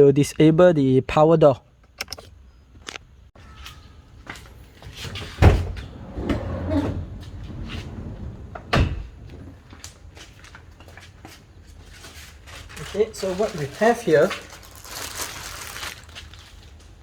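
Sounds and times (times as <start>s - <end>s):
door thumps: 8.5s - 9.5s.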